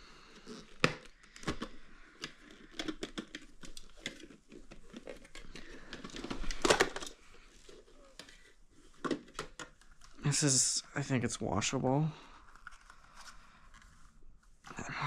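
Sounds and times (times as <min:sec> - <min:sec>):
plastic vacuum parts clicking and knocking: 0:00.4 - 0:10.2
loud plastic clatter: 0:02.6 - 0:07.2.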